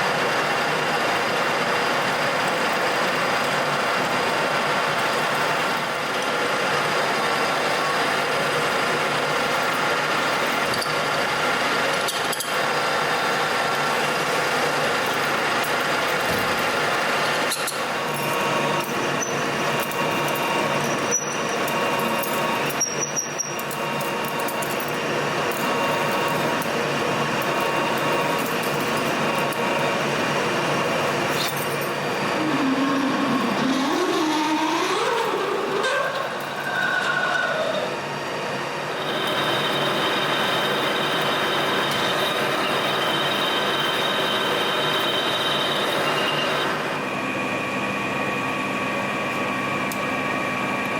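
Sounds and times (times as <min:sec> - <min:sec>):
metal lathe cutting: 0:00.0 - 0:47.0
wavering rising tone: 0:32.2 - 0:38.0.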